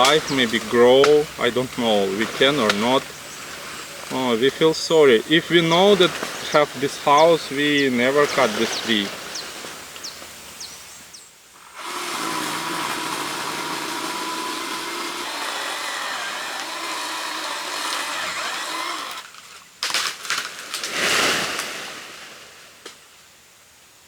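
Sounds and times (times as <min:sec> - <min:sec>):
small power tool running: 0:11.6 - 0:19.4
loud noisy burst: 0:11.7 - 0:19.2.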